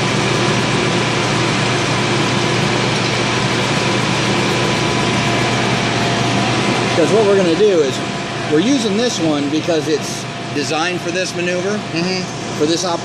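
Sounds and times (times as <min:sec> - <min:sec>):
metal lathe cutting: 0:00.0 - 0:13.0.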